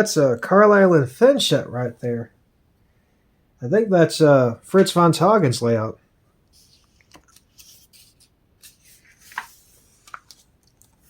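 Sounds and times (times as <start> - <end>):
paper pages rustling: 6.6 - 11.0.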